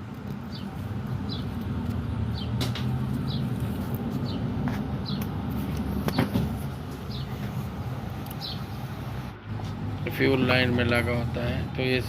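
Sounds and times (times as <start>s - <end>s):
small bird chirping: 0.2s - 6.3s, 8.2s - 8.8s.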